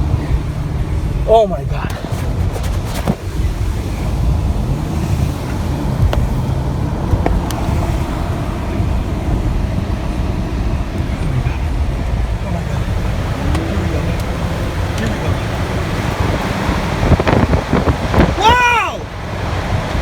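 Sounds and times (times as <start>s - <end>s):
strong wind on microphone: 15.5s - 20.0s.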